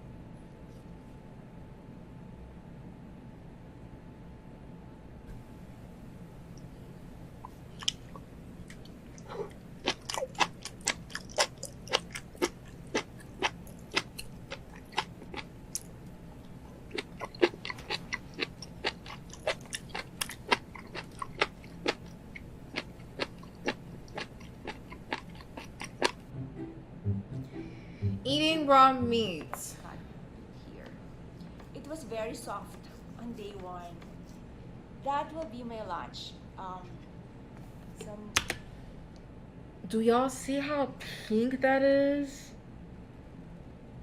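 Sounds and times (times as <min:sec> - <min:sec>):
person biting and chewing: 0:07.8 - 0:15.9, 0:16.8 - 0:26.3.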